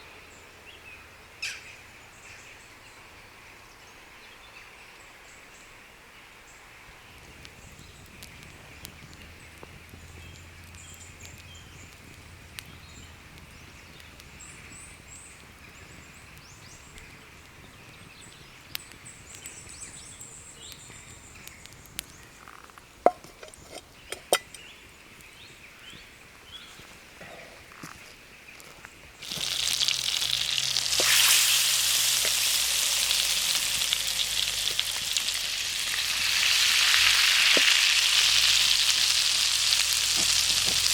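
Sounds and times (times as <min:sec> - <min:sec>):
campfire crackling and popping: 0:07.1 - 0:25.6, 0:28.6 - 0:40.9.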